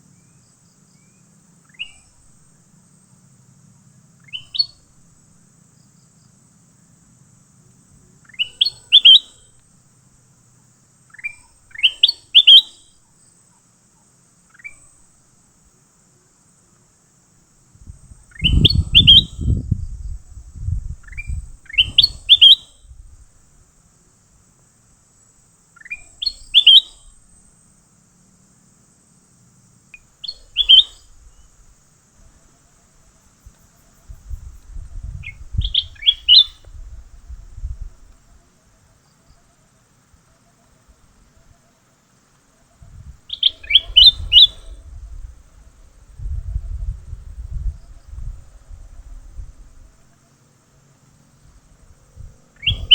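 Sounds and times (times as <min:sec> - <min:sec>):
bird chirping: 0:00.1 - 0:02.3, 0:04.2 - 0:04.9, 0:08.1 - 0:09.6, 0:11.0 - 0:15.0, 0:18.0 - 0:23.0, 0:25.7 - 0:27.2, 0:30.0 - 0:31.7, 0:32.3 - 0:39.7, 0:42.8 - 0:45.2, 0:52.2 - 0:52.9.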